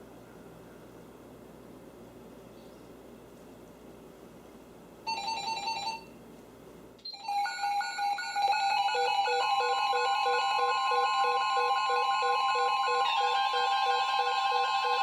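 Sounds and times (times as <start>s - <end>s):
electronic alarm beeps: 7.1s - 15.0s
steady alert tone: 7.2s - 15.0s.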